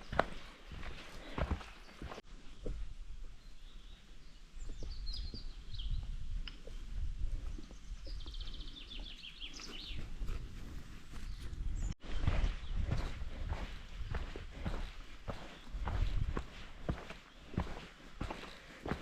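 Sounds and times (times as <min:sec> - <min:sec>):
footsteps on a trail: 0:00.0 - 0:04.0, 0:04.6 - 0:19.0
songbird chirping and trilling: 0:01.2 - 0:10.1
wind rumble: 0:04.5 - 0:08.8, 0:09.9 - 0:17.0.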